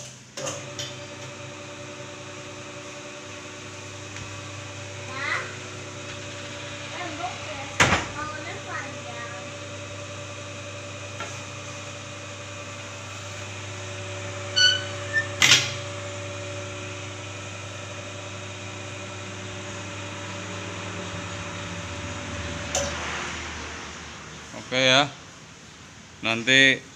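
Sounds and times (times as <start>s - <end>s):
electric motor humming: 0.5s - 23.6s
brief squeak: 14.6s - 15.4s.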